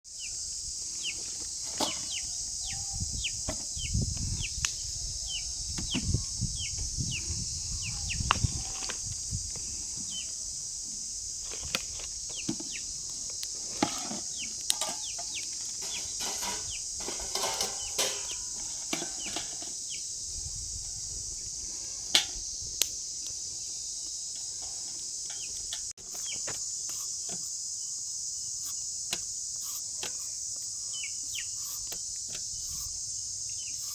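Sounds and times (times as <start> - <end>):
insect chorus drone: 0.1 - 33.9
bird chirps and clucks: 1.8 - 8.8, 14.3 - 20.0, 29.6 - 32.9.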